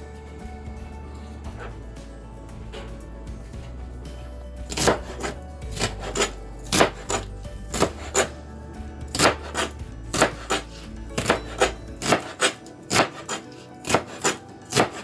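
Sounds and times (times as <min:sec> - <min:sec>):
knife chopping on cutting board: 0:04.7 - 0:08.3, 0:09.1 - 0:15.0.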